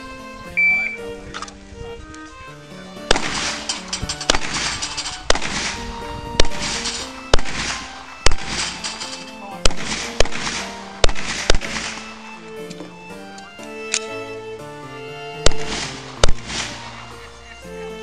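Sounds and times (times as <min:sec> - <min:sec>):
handgun shots: 0:03.1 - 0:05.7, 0:06.6 - 0:12.0.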